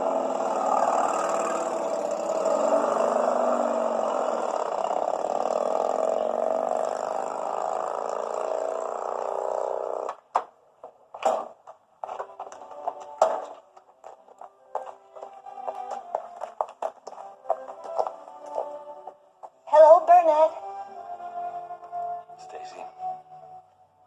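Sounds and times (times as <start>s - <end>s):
vehicle engine running: 0.0s - 10.3s, 12.0s - 19.9s
sharp knocks: 11.2s - 13.6s.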